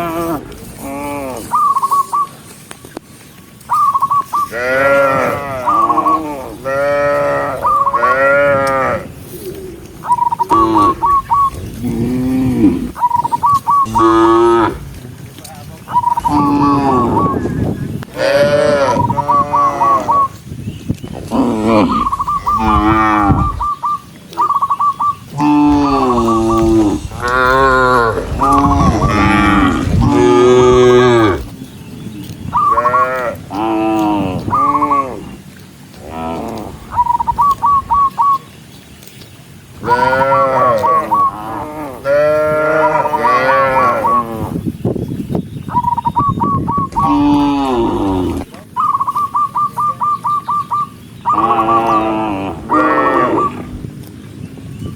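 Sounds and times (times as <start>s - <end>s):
cattle mooing: 4.5s - 9.2s, 10.4s - 11.2s, 13.8s - 14.9s, 16.3s - 17.4s, 18.2s - 20.4s, 21.2s - 23.8s, 25.3s - 31.6s, 39.8s - 44.6s, 47.0s - 48.5s, 51.3s - 53.7s.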